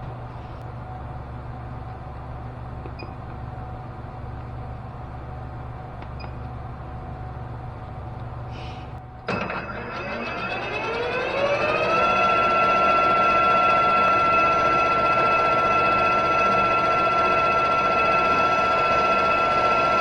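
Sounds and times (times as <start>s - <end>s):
electric hum of shop machinery: 0.0s - 20.0s
machine-tool motor spinning up: 9.3s - 20.0s.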